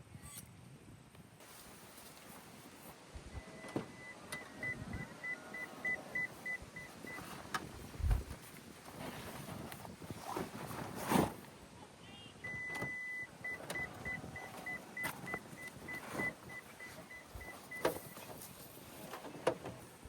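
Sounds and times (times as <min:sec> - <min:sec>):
car warning chime beeps: 0:03.3 - 0:07.4, 0:12.2 - 0:18.5
dull thump: 0:08.0 - 0:08.4.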